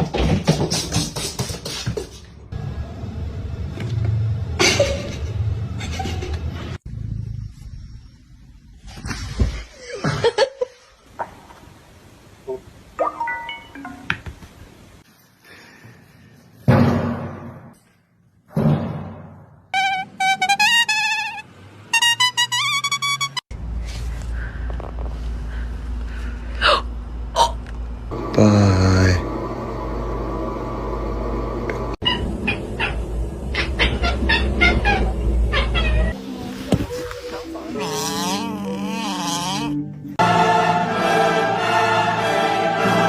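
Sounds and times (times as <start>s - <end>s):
cat meowing: 33.6s - 36.2s.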